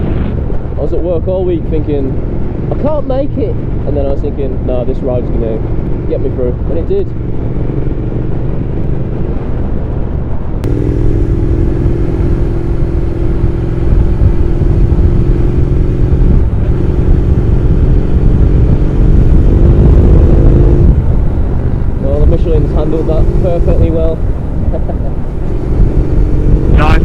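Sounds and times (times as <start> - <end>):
motorcycle engine cruising: 0.0 - 27.0
wind rush on microphone: 0.0 - 27.0.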